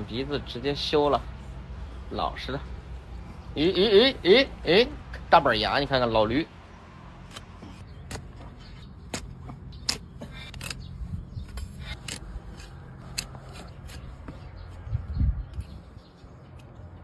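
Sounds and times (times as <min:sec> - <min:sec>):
blade clicking and scraping hoof: 0:07.2 - 0:14.9.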